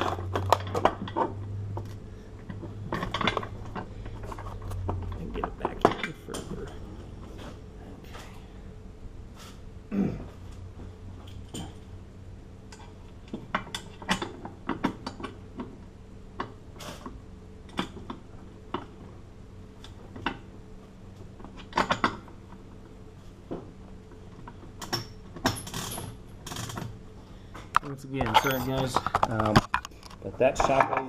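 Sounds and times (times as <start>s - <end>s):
low steady hum: 0.0s - 31.0s.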